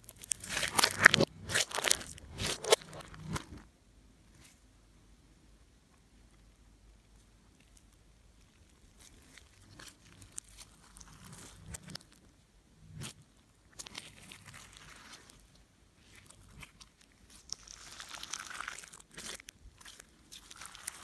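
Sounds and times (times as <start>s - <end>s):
slime squished by hand: 0.0s - 3.6s, 16.0s - 21.0s.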